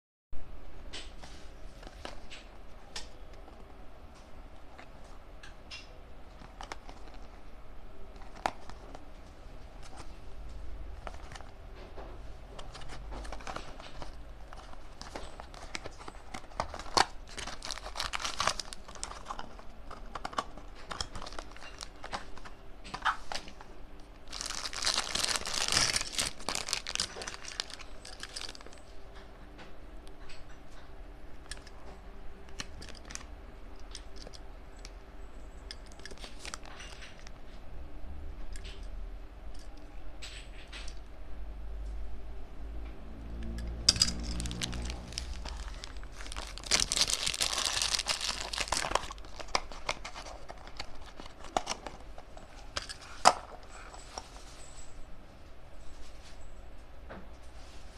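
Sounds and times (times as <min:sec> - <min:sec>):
paper and plastic crinkling: 0:06.3 - 0:07.4, 0:08.1 - 0:09.1, 0:10.9 - 0:29.3, 0:35.7 - 0:37.4, 0:44.0 - 0:55.0.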